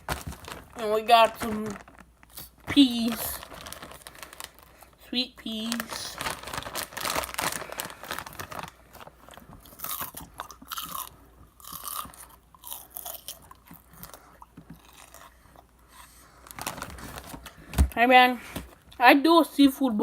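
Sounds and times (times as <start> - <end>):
person chewing and eating: 7.2 - 16.7.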